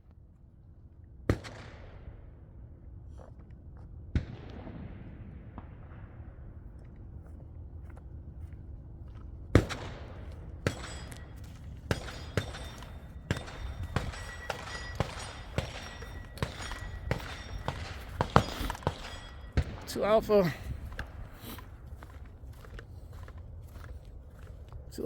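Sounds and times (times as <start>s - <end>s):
gunshots in quick succession: 9.6s - 21.5s.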